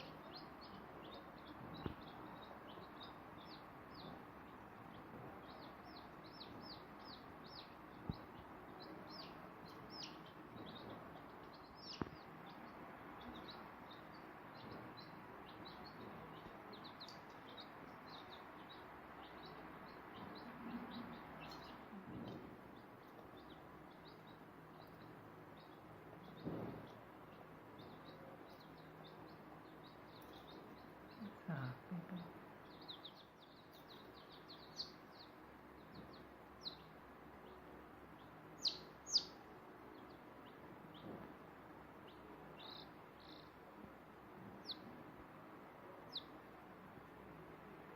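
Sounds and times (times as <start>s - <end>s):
chicks peeping: 0.0s - 47.9s
sharp knocks: 26.4s - 27.0s.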